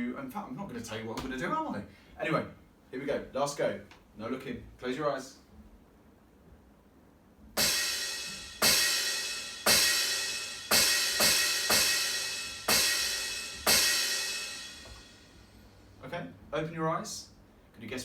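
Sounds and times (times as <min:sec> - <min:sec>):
electronic crash cymbal hits: 0:07.6 - 0:15.6.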